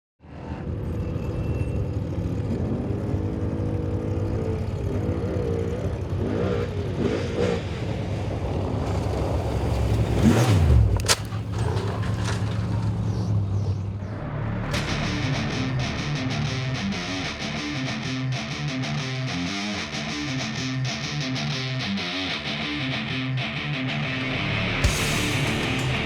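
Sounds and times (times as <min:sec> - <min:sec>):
race vehicle engines revving: 0:00.6 - 0:18.6.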